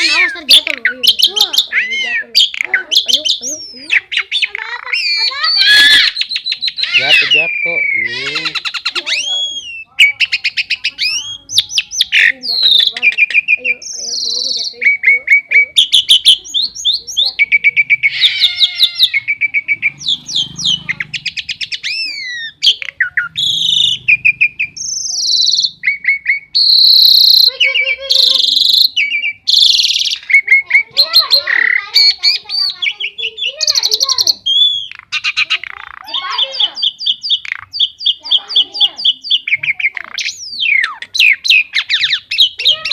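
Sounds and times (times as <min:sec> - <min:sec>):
bird singing varied song: 0:00.0 - 0:42.9.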